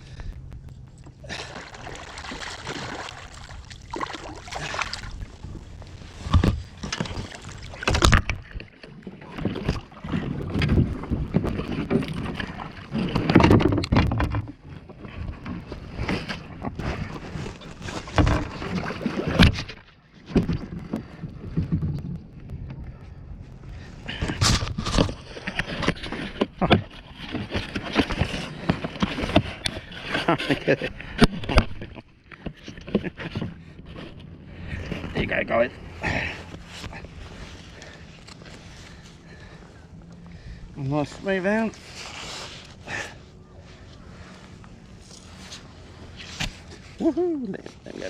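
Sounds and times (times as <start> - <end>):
water sloshing against kayak: 0.8 - 48.0.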